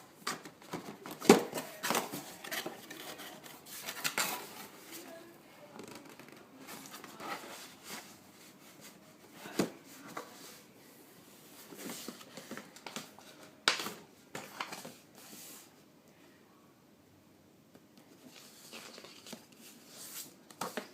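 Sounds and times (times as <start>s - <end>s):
packaging rustling and scraping: 0.3s - 5.1s.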